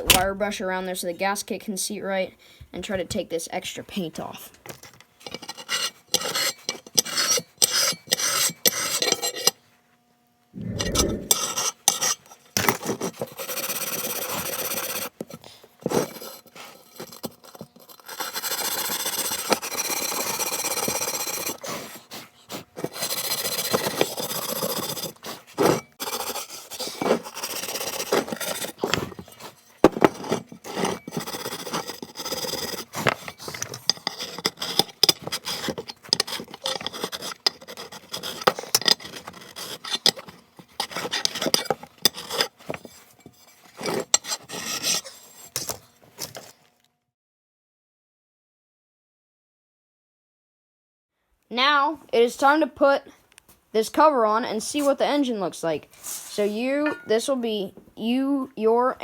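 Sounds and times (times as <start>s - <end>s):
file and wire brush rasping metal: 5.3s - 9.6s, 15.9s - 45.8s.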